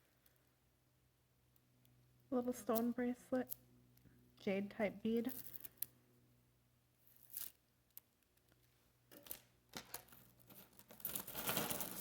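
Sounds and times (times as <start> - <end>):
beads clicking and rattling: 5.3 - 5.9, 7.0 - 12.0.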